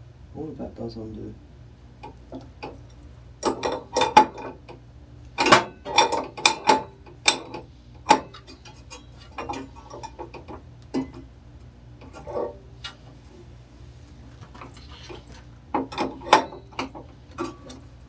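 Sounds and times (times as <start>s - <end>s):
metal tools clicking and rattling: 5.4s - 11.2s, 14.6s - 17.9s.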